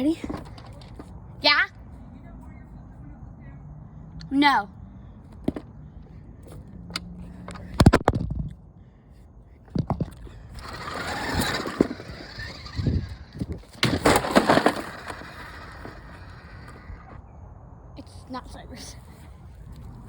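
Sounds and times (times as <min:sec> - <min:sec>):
wheels rolling on rough ground: 0:00.0 - 0:01.4, 0:09.7 - 0:17.2
toy car knocks: 0:13.5 - 0:16.8.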